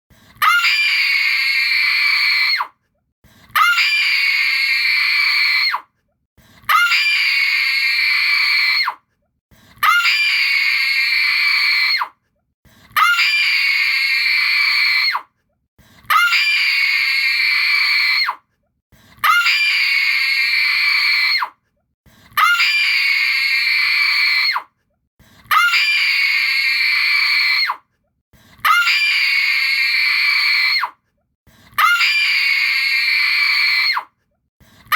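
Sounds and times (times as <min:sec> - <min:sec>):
woman screaming: 0:00.4 - 0:02.7, 0:03.6 - 0:05.8, 0:06.7 - 0:09.0, 0:09.8 - 0:12.1, 0:13.0 - 0:15.2, 0:16.1 - 0:18.4, 0:19.2 - 0:21.5, 0:22.4 - 0:24.6, 0:25.5 - 0:27.8, 0:28.6 - 0:30.9, 0:31.8 - 0:34.1.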